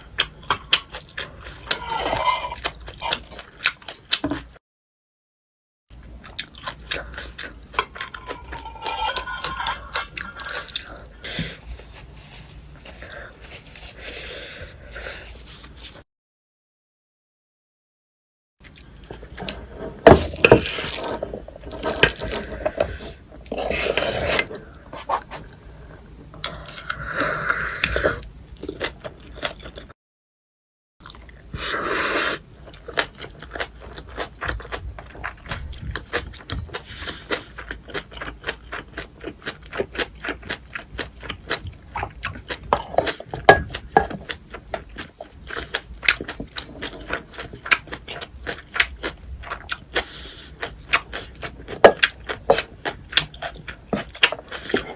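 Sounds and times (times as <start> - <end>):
spoon scraping rice in bowl: 8.0 - 10.1
wet chewing: 32.6 - 54.9.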